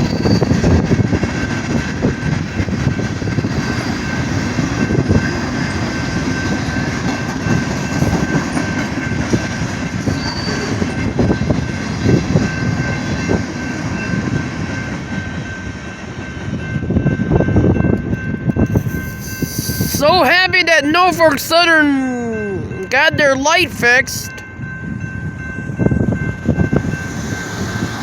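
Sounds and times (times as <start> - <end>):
high wheel squeal: 0.0 - 0.8, 10.0 - 11.1, 18.7 - 20.1
wheels clacking over rails: 0.0 - 17.2
rail cars rumbling: 0.0 - 28.0.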